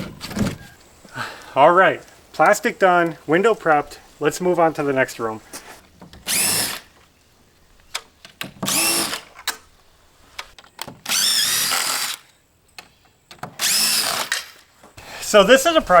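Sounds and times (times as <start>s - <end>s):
cordless drill motor whine: 6.2s - 6.9s, 8.7s - 9.3s, 11.1s - 12.3s, 13.6s - 14.6s.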